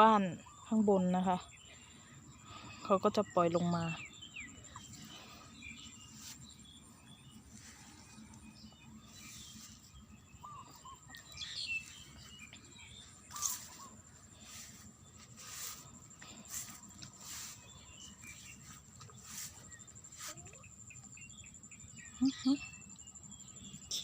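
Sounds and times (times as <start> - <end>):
short chirping calls: 9.1 - 14.8, 16.5 - 23.2.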